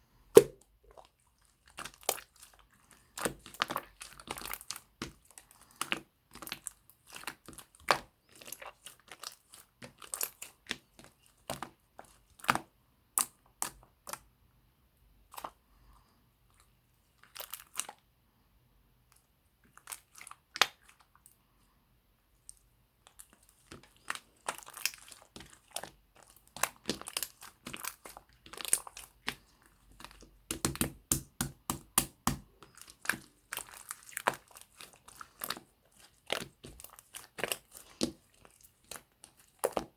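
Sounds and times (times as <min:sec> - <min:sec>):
crunchy slime crackling: 0:00.4 - 0:12.6, 0:23.0 - 0:39.9.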